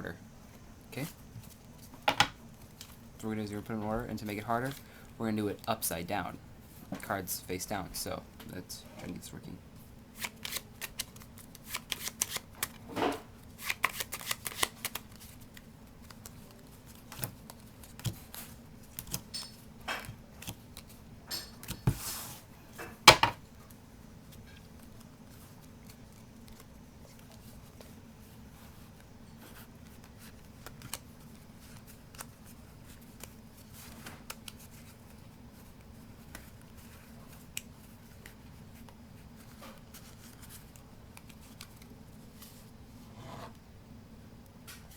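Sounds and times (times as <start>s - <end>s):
playing cards clicking and snapping: 10.2s - 12.8s, 13.6s - 19.3s, 20.4s - 21.0s, 30.0s - 32.4s.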